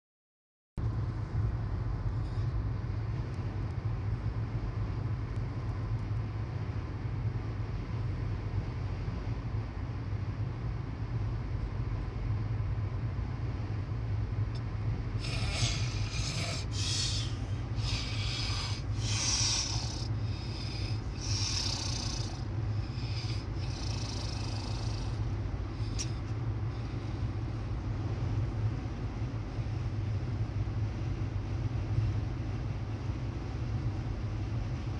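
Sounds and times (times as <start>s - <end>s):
moving vehicle hum: 0.8s - 34.9s
person snoring with snorts: 15.2s - 25.2s.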